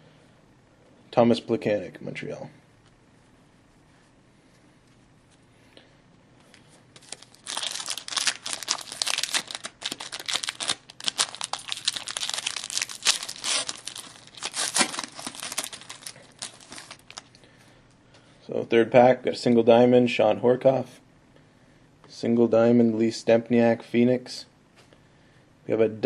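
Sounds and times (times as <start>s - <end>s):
foil card pack tearing and crinkling: 7.0s - 17.3s.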